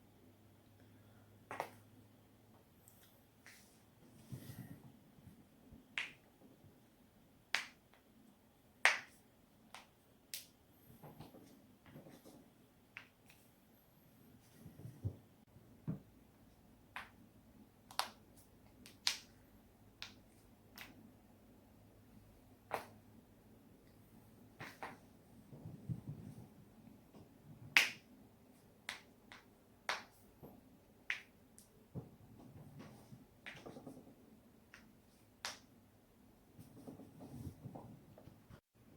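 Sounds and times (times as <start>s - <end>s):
rustling of body movement: 36.6s - 38.7s.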